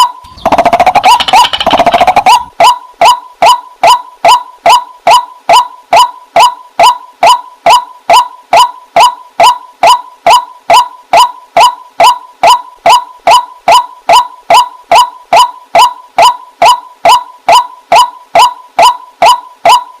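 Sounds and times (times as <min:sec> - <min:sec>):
waterhen calling: 0:00.0 - 0:05.2.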